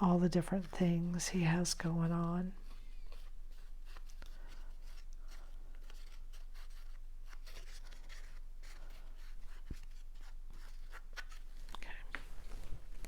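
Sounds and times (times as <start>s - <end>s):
steady low hum: 0.0s - 6.4s.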